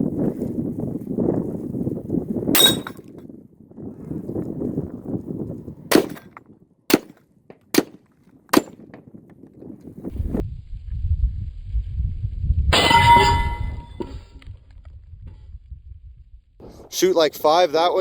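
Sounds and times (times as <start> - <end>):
rifle shots: 6.9 - 8.0
ringing tone: 12.8 - 14.1.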